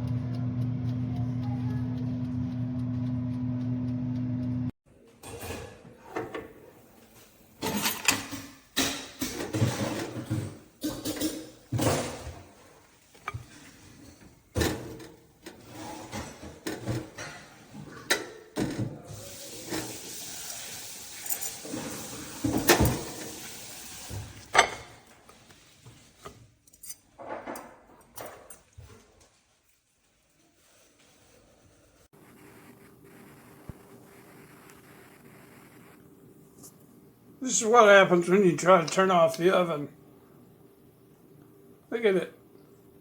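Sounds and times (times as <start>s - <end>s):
dishes and pans clattering: 5.2s - 6.6s, 7.6s - 12.6s, 13.2s - 19.0s, 21.2s - 23.4s, 27.0s - 28.7s.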